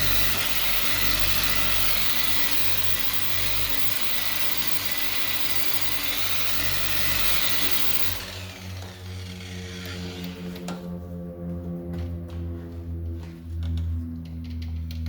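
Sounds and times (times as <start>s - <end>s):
orbital sander whirring: 0.0s - 11.2s
low hum: 0.0s - 15.0s.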